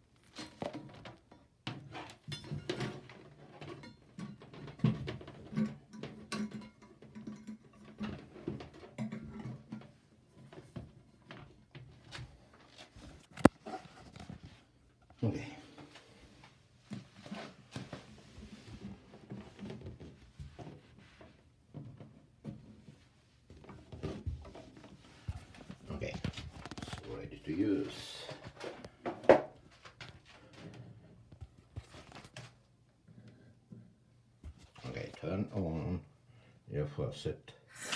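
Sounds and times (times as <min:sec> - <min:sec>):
clicks and taps of plumbing parts: 0:00.5 - 0:11.9, 0:13.4 - 0:14.3.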